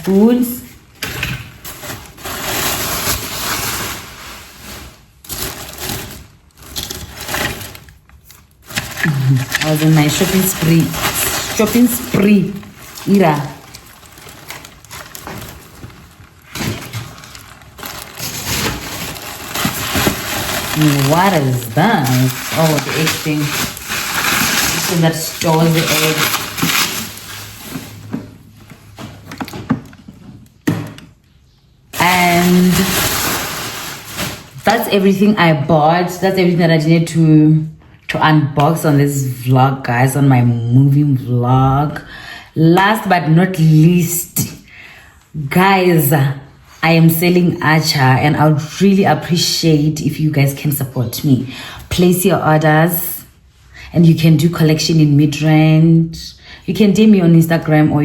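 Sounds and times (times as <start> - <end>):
packaging rustling and crinkling: 0.9 - 30.6, 32.0 - 35.3.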